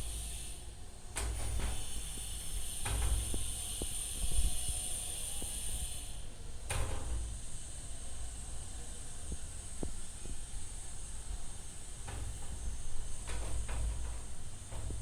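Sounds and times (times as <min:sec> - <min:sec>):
air hiss: 0:00.0 - 0:14.9.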